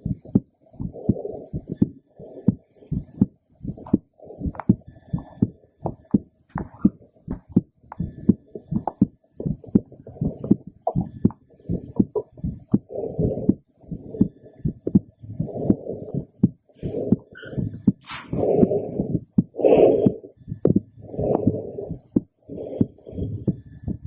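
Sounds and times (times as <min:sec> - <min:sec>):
heartbeat through stethoscope: 0:00.0 - 0:24.0.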